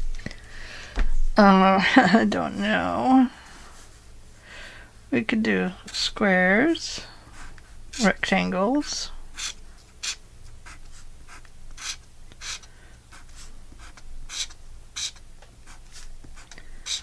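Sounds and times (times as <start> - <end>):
pencil scratching on paper: 7.4 - 8.2, 9.3 - 17.0.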